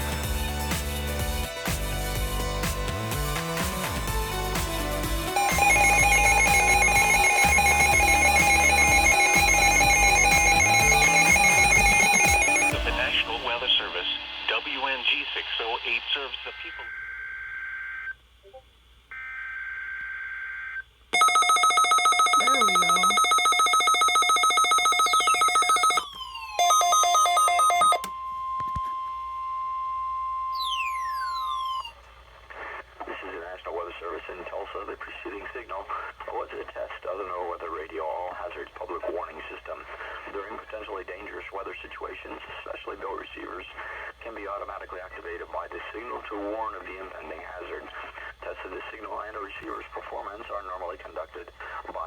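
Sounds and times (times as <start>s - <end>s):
music: 0.0s - 14.5s
electronic alarm tone: 5.3s - 14.3s, 20.4s - 32.0s.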